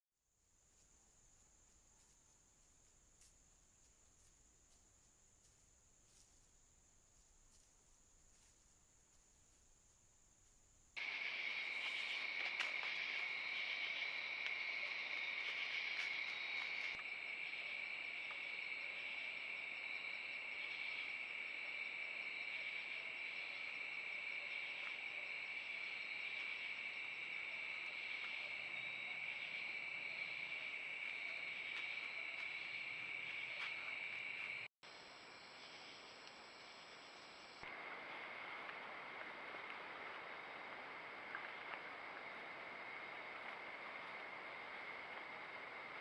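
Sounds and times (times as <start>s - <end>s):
crickets trilling: 0.3s - 46.0s.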